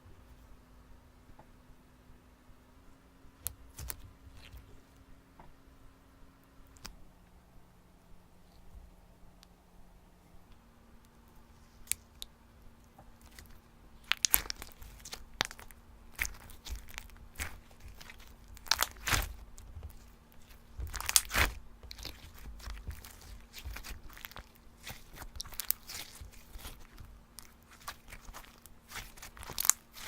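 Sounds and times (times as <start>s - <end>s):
slime crackling and popping: 13.2s - 30.0s.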